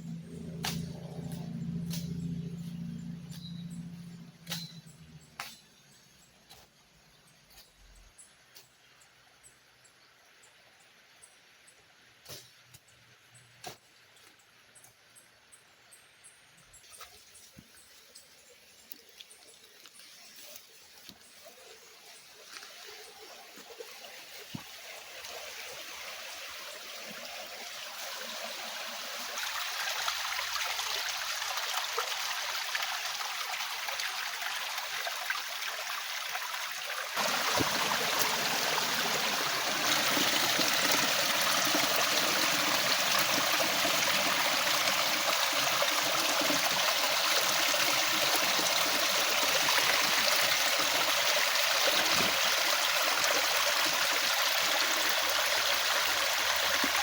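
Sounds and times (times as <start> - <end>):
river water rushing: 28.0 - 57.0.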